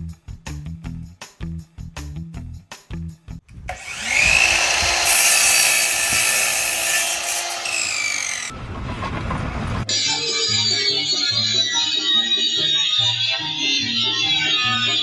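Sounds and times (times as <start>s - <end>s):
music: 0.0s - 3.7s, 9.8s - 15.0s
power tool whining under load: 3.7s - 8.5s.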